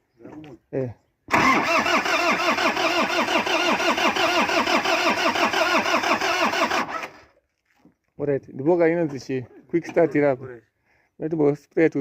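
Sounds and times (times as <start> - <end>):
truck engine cranking: 1.3 - 7.3.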